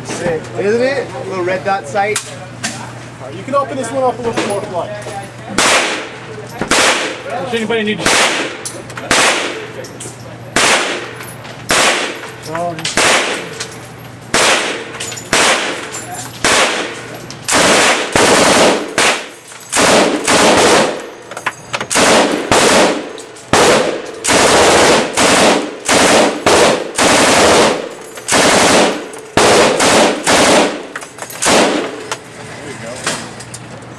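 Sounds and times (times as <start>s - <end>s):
machine gun automatic bursts: 14.3s - 21.1s, 21.9s - 32.0s.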